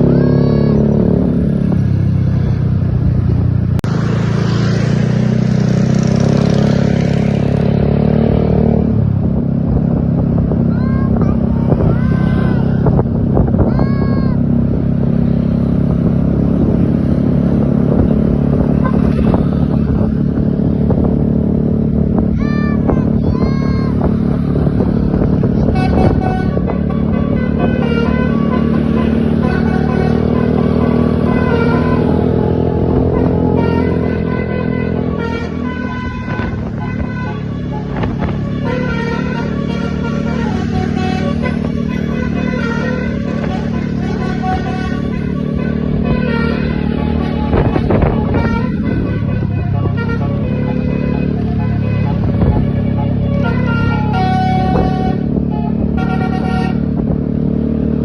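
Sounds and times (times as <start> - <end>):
traffic engines running: 0.0 - 58.0
high rising and falling tones: 3.8 - 8.6.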